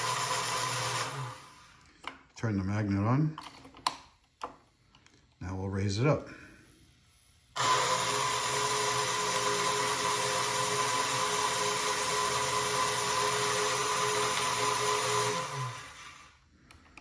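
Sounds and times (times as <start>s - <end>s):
toy crane motor whirring: 0.0s - 1.8s, 7.6s - 16.4s.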